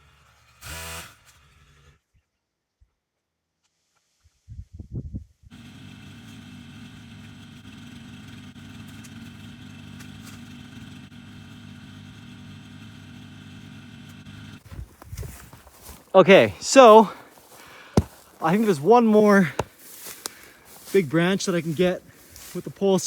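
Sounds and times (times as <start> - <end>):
engine idling: 5.5 - 23.0.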